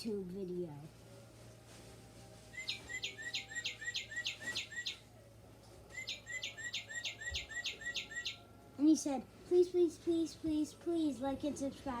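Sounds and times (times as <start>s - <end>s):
recorded cardinal song from toy: 2.5s - 5.1s, 5.9s - 11.2s.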